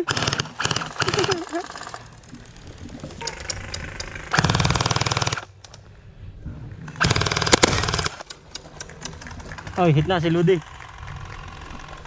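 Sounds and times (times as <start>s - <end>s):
gel blaster full-auto bursts: 0.0s - 2.1s, 3.9s - 5.5s, 7.0s - 8.2s.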